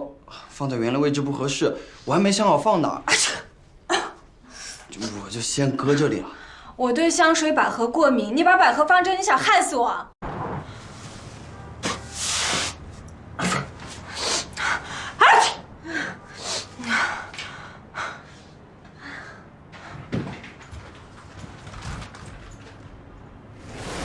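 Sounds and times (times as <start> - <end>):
person sneezing: 11.8 - 12.8.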